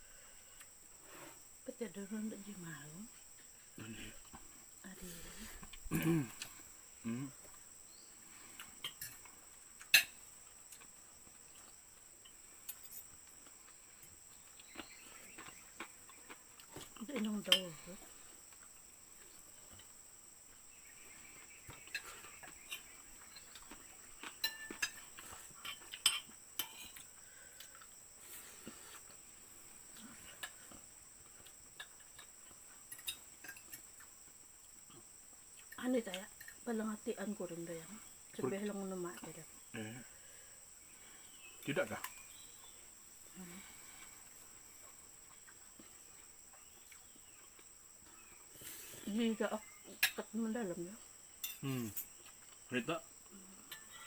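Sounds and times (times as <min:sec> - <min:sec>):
crickets trilling: 0:00.0 - 0:54.0
insect chorus: 0:00.0 - 0:54.0
tableware clinking: 0:24.4 - 0:25.0.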